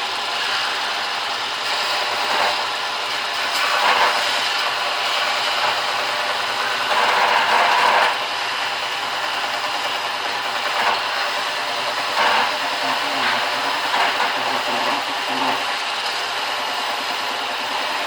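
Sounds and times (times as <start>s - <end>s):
belt sander running: 0.0s - 18.0s.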